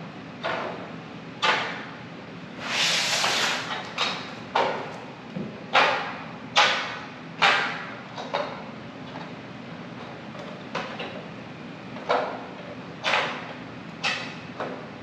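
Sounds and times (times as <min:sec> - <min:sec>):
sheet metal scraping: 0:02.6 - 0:03.9.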